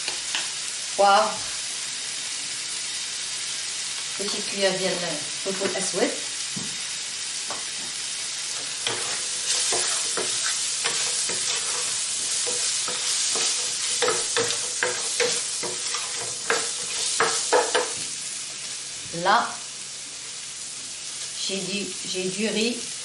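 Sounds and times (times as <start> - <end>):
onions sizzling in a pan: 0.0 - 23.0
spoon knocking and scraping a pan: 8.6 - 18.1.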